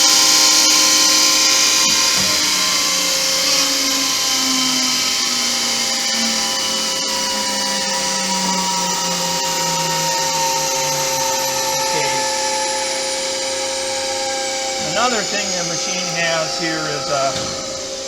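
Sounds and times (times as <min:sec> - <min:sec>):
grinder machine whining: 0:00.0 - 0:18.0.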